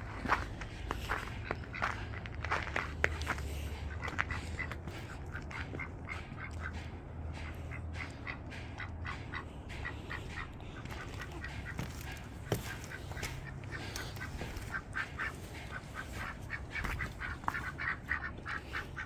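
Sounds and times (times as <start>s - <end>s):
ducklings peeping: 0.0s - 19.0s.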